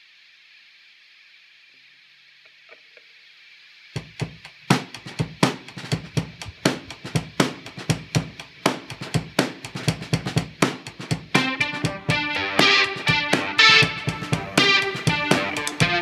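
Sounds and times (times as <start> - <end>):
drum kit rock beat: 4.0 - 16.0.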